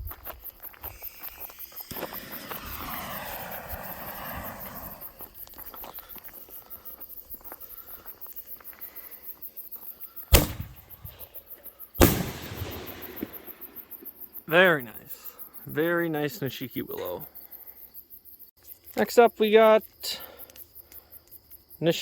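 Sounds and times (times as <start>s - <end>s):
crickets chirping: 0.0s - 22.0s
hiss: 0.8s - 5.2s
firework mortar launch boom: 0.9s - 5.2s, 10.3s - 11.4s, 12.0s - 14.0s
firework burst bang: 1.4s - 5.0s, 10.3s - 11.3s, 12.0s - 13.9s.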